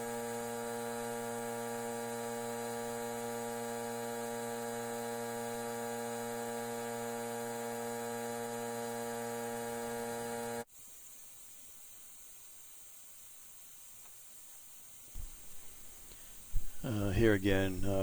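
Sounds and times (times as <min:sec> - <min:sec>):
electrical hum: 0:00.0 - 0:10.7, 0:14.3 - 0:18.0
faint hiss: 0:10.7 - 0:18.0.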